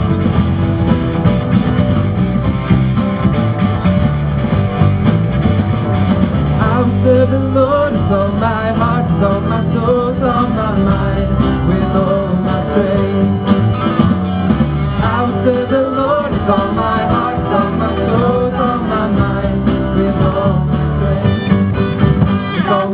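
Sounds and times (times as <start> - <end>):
band playing: 0.0 - 22.9
person singing: 6.6 - 13.7, 15.0 - 21.6, 22.5 - 22.9.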